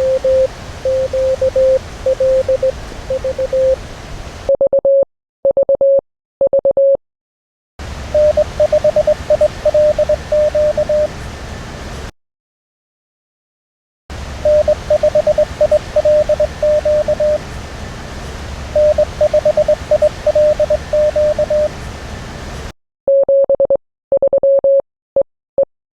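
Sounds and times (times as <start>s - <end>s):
morse code tone: 0.0s - 3.8s, 8.1s - 11.1s, 14.4s - 17.4s, 18.8s - 21.8s, 23.1s - 24.8s
radio band hiss: 0.0s - 4.5s.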